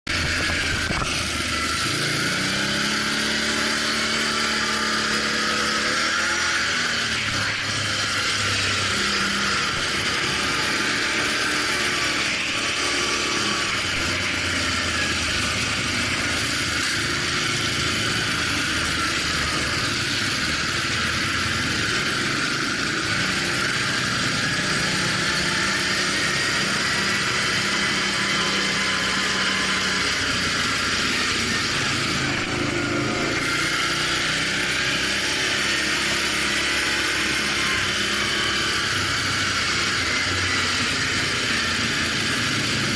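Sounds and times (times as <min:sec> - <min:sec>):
off-road vehicle engine: 0:00.0 - 0:42.9
wind and terrain noise: 0:00.1 - 0:01.3.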